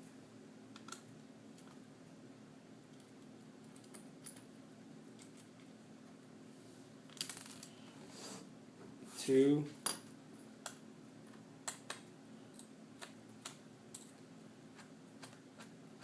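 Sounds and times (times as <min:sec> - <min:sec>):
faint hum: 0:00.0 - 0:16.0.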